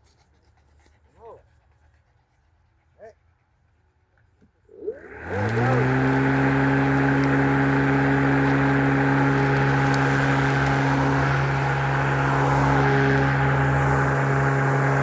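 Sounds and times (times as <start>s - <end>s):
electric lawnmower humming: 4.7s - 15.0s.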